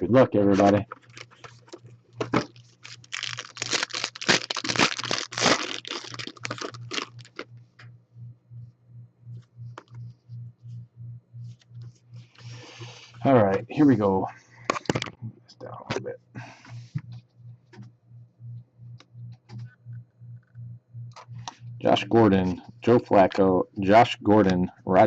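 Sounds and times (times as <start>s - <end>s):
foil wrapper tearing and crinkling: 0.9s - 7.4s.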